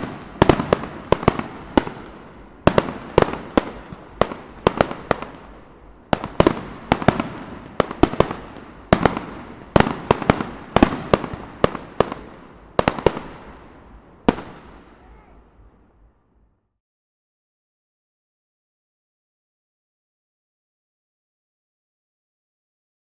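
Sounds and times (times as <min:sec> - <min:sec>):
fireworks bangs with crackling echo: 0:00.0 - 0:15.4.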